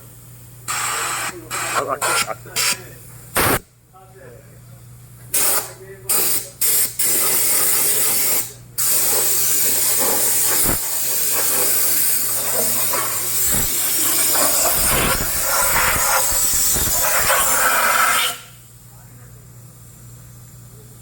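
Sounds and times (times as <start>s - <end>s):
pressure washer jet hissing: 3.4s - 3.6s, 5.4s - 18.6s.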